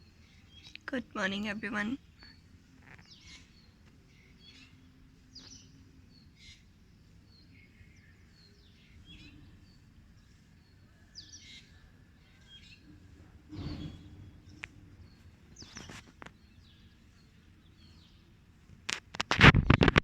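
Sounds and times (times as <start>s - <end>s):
birds chirping faintly: 0.0s - 19.2s.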